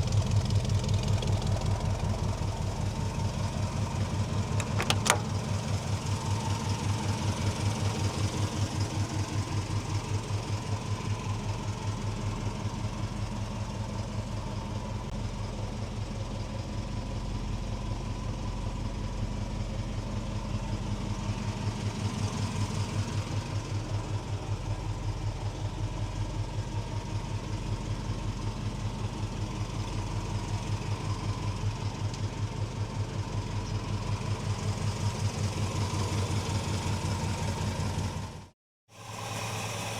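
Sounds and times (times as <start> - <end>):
car engine idling: 0.0 - 15.1.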